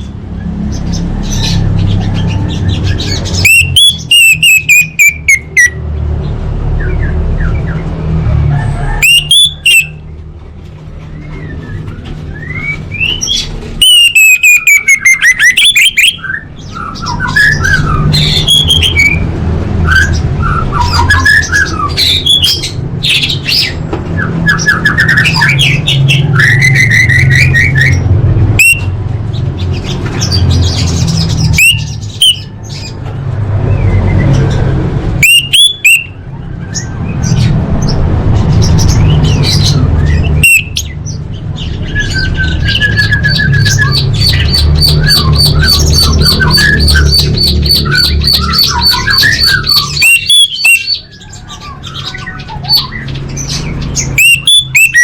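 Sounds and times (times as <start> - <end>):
thrush singing varied song: 35.2 - 55.0.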